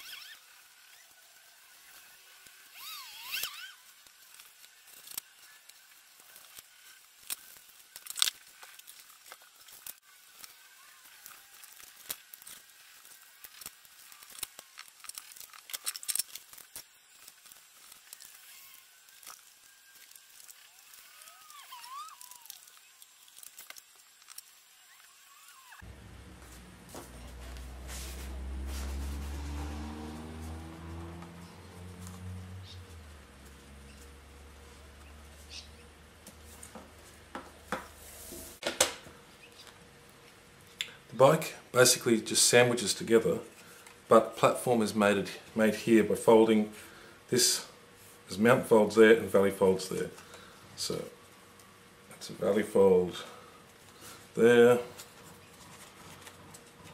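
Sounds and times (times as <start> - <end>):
paper and card rustling: 3.9 - 24.8, 53.8 - 56.9
low steady hum: 25.8 - 56.9.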